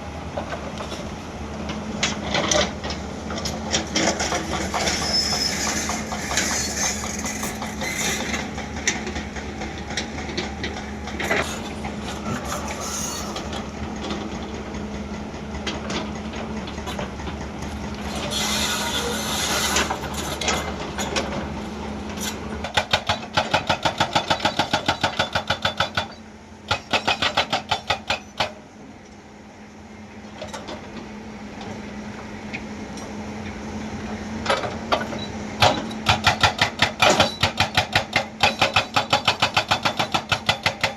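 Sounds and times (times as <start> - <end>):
diesel engine running: 0.0 - 27.2
hydraulic hammer pounding rock: 22.2 - 28.6, 34.4 - 40.9.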